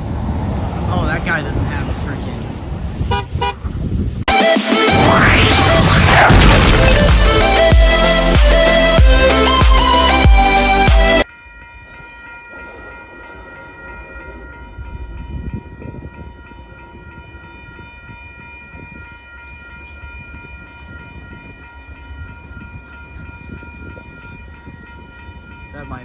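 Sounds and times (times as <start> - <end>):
train rumbling by: 0.0 - 3.1
steady high tones: 4.3 - 17.5.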